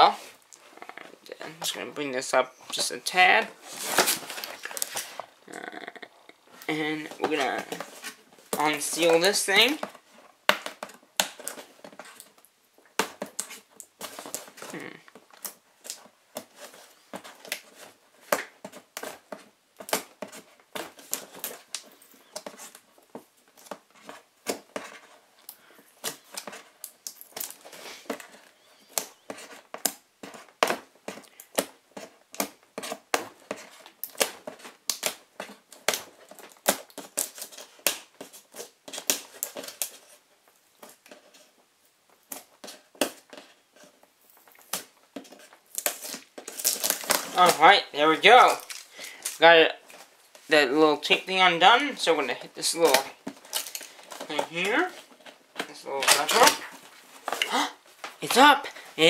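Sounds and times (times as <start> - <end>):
packing tape peeling off cardboard: 3.6 - 5.3, 44.3 - 47.6.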